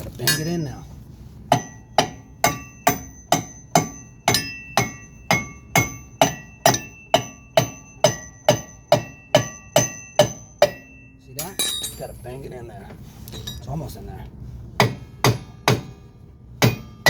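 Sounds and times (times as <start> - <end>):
hammer striking metal hub: 0.2 - 0.8, 1.5 - 12.4, 14.8 - 17.0.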